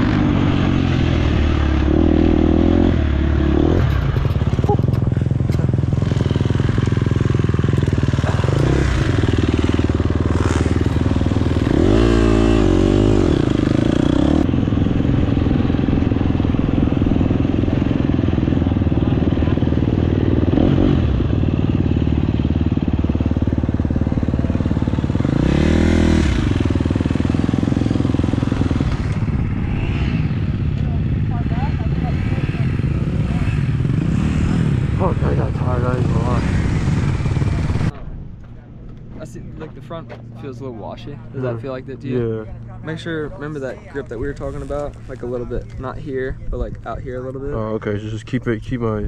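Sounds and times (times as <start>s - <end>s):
dirt bike engine revving: 0.0s - 37.9s.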